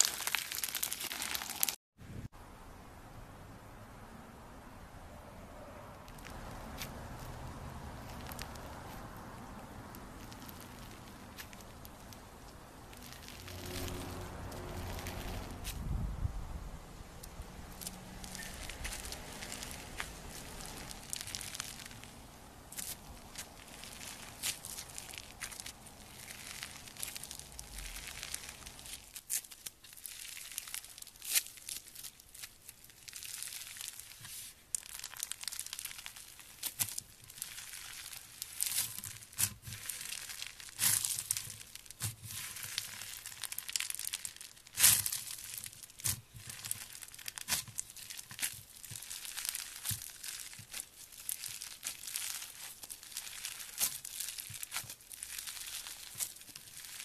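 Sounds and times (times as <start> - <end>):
crunchy slime crackling and popping: 0.0 - 1.8, 6.0 - 15.9, 17.1 - 57.0.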